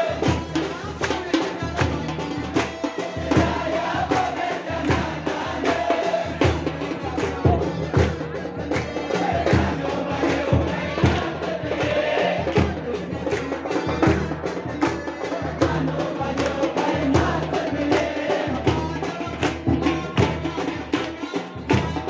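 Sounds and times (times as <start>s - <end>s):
devotional music: 0.0s - 22.0s
steady percussion beat: 0.0s - 22.0s.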